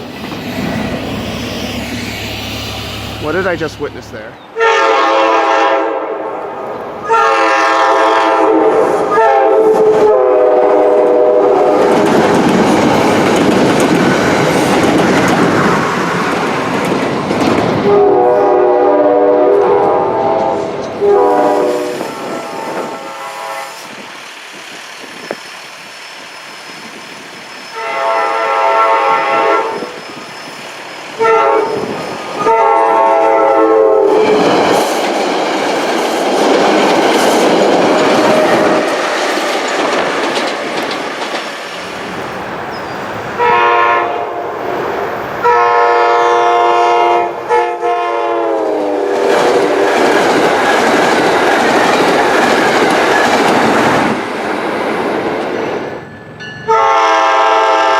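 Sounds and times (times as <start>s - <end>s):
passing train rumble: 0.0s - 57.9s
train air horn blasts: 4.6s - 6.3s, 7.0s - 11.8s, 17.8s - 23.9s, 27.7s - 30.0s, 31.2s - 34.4s, 43.4s - 44.5s, 45.4s - 49.8s, 56.7s - 57.9s.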